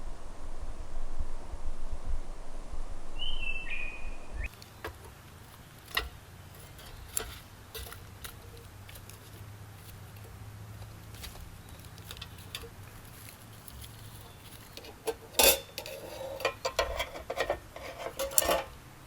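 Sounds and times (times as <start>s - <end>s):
wind rumble on microphone: 0.0s - 4.5s
steady low hum: 0.0s - 19.0s
bird whistled call: 3.2s - 4.5s
sharp clicks and crackles: 4.5s - 18.8s.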